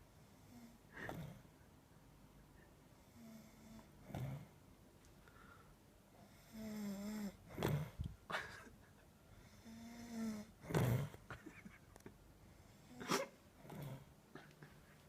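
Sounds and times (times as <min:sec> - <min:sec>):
man snoring: 0:06.3 - 0:08.0, 0:09.4 - 0:11.2.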